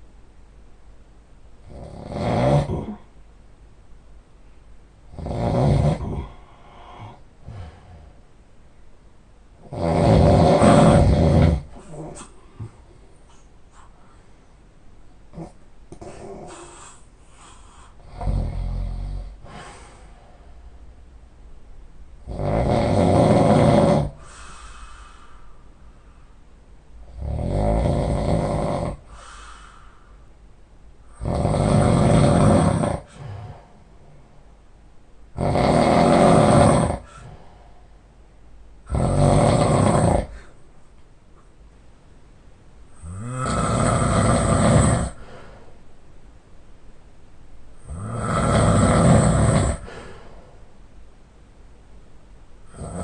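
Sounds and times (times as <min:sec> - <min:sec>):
man snoring heavily: 0:01.7 - 0:03.0, 0:05.1 - 0:08.2, 0:09.6 - 0:12.3, 0:15.3 - 0:20.0, 0:22.2 - 0:25.1, 0:27.1 - 0:29.8, 0:31.1 - 0:33.7, 0:35.4 - 0:37.4, 0:38.9 - 0:40.5, 0:43.0 - 0:45.4, 0:47.8 - 0:50.3, 0:52.7 - 0:53.0
soft breaths: 0:06.0 - 0:08.5, 0:10.7 - 0:14.7, 0:15.4 - 0:18.2, 0:19.3 - 0:21.0, 0:24.1 - 0:26.7, 0:29.0 - 0:31.2, 0:32.2 - 0:34.6, 0:37.0 - 0:38.4, 0:40.2 - 0:41.6, 0:43.8 - 0:46.0, 0:48.6 - 0:51.1.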